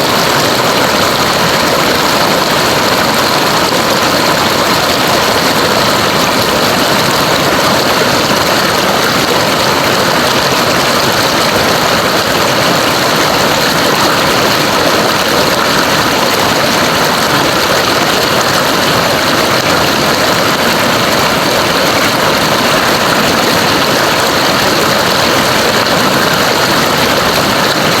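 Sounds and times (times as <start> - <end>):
river water rushing: 0.0 - 28.0.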